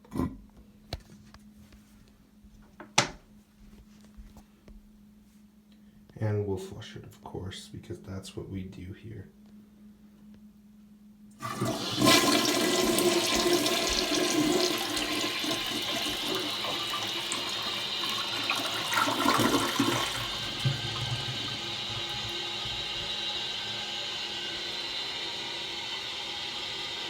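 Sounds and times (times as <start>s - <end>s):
toilet flushing: 11.4s - 27.0s.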